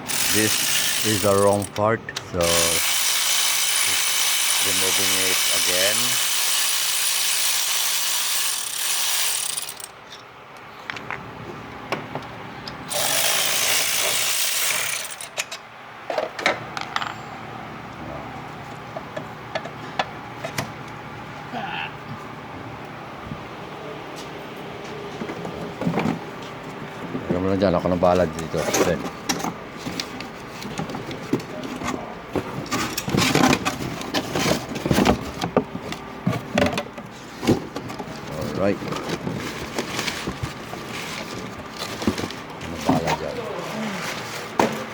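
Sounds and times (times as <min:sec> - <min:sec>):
power tool running: 0:00.0 - 0:01.8, 0:02.4 - 0:10.0, 0:12.9 - 0:15.4
ratchet clicks: 0:00.0 - 0:01.8, 0:02.5 - 0:09.9, 0:12.9 - 0:15.5.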